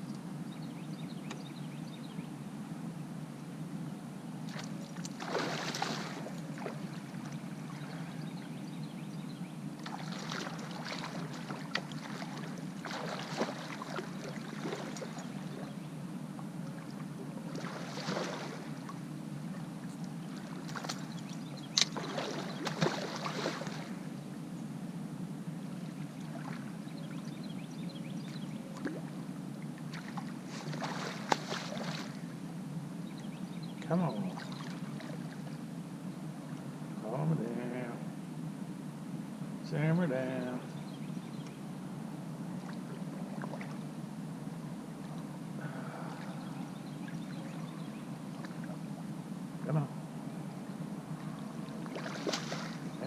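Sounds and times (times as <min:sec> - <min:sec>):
water slapping against boat hull: 0:51.8 - 0:52.8.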